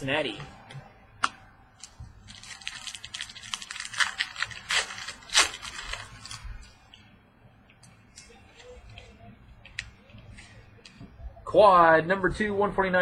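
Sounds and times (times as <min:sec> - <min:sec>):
cards and plastic crinkling: 0:01.8 - 0:07.0.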